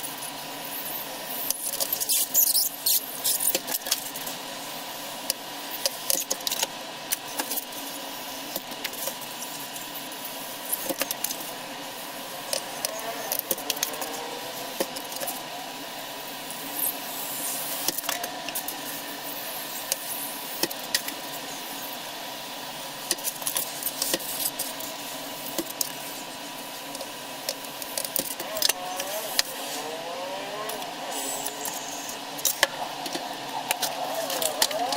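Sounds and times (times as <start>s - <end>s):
foam squeaking under hot-wire cutter: 1.9s - 3.6s
scattered crackles: 30.7s - 34.9s.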